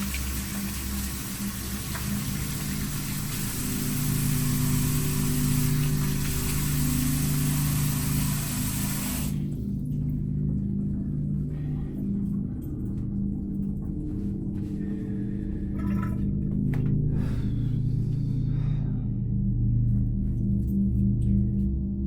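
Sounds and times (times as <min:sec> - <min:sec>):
constant hiss: 0:00.0 - 0:09.5
low droning tones: 0:00.0 - 0:22.0.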